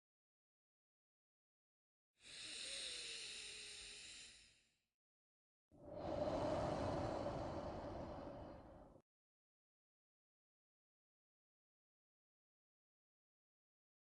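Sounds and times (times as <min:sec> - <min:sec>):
person breathing deeply: 0:02.2 - 0:04.4, 0:05.8 - 0:09.0.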